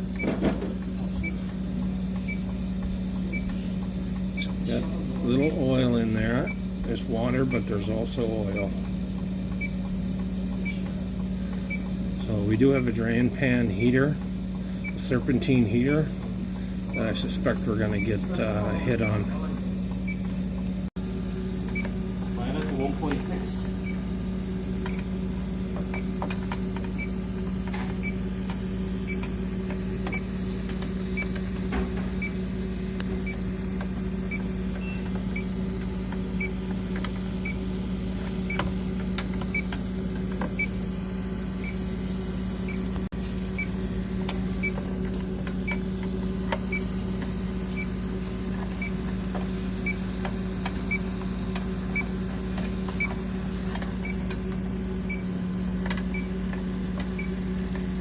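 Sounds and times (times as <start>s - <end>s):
leak detector beeping: 0.0s - 20.8s, 21.6s - 58.0s
steady low hum: 0.0s - 58.0s.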